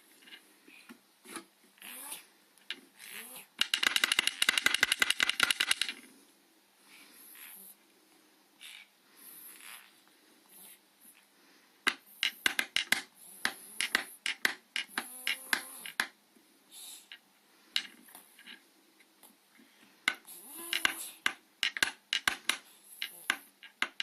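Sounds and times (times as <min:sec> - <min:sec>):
wooden toy knocking: 0:03.6 - 0:06.0, 0:11.9 - 0:16.1, 0:20.1 - 0:24.0.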